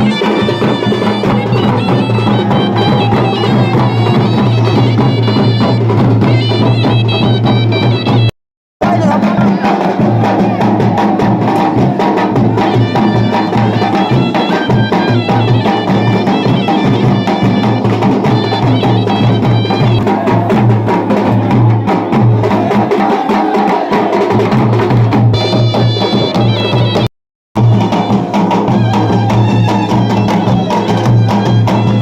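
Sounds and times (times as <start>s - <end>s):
high melody line: 0.0s - 8.3s, 12.6s - 20.8s, 25.4s - 32.0s
drums beating steady rhythm: 0.0s - 32.0s.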